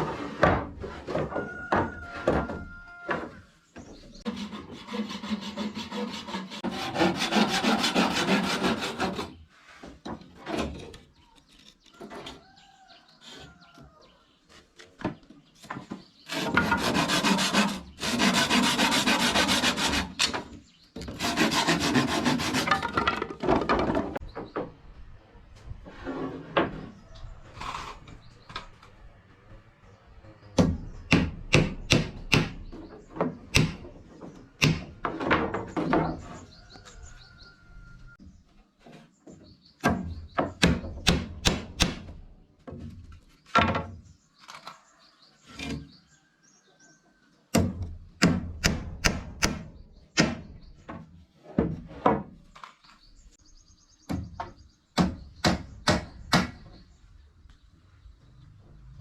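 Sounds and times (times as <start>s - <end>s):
sharp strikes on wood: 30.6s - 32.7s, 33.5s - 33.9s, 34.6s - 34.9s, 39.8s - 42.2s, 47.6s - 50.5s, 54.1s - 56.6s.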